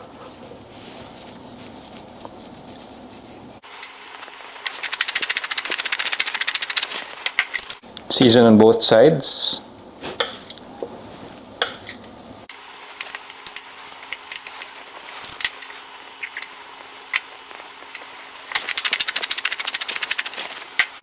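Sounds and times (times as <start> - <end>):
spice mill grinding clicks: 4.7 - 7.8, 12.9 - 16.5, 17.9 - 21.0.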